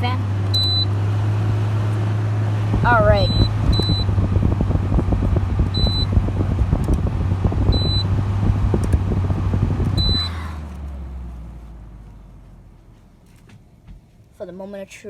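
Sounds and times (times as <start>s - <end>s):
air conditioner fan humming: 0.0s - 14.9s
airflow buffeting microphone: 0.2s - 10.8s
short electronic beeps: 0.5s - 0.9s, 3.1s - 4.1s, 5.8s - 6.1s, 7.7s - 8.1s, 10.0s - 10.4s.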